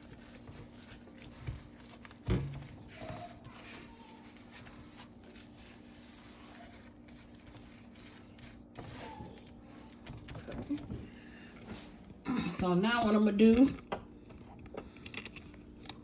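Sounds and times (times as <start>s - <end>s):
gloved hands rubbing meat: 0.0s - 10.8s.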